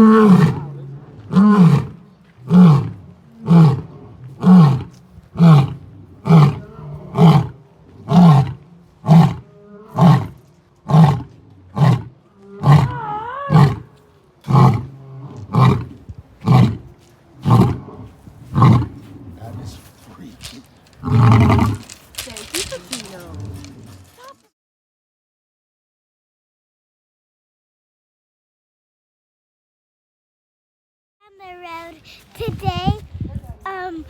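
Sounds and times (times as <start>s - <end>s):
lion roaring: 0.0s - 24.2s.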